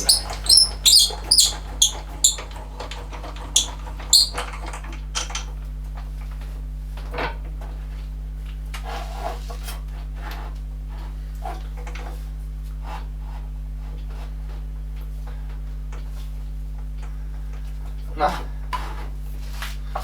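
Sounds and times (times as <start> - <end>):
high metal squeaks and clicks: 0.0 - 5.5.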